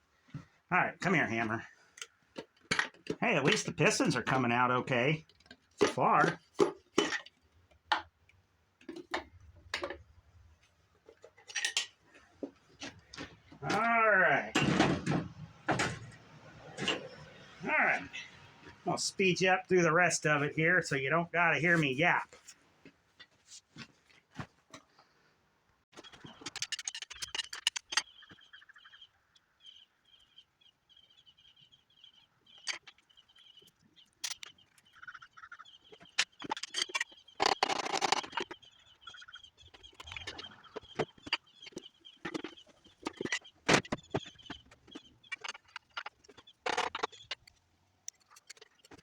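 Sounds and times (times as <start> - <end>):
tools and engine parts clanking: 1.9 - 8.2, 8.8 - 17.6, 25.9 - 28.4, 32.5 - 35.0, 35.8 - 49.0.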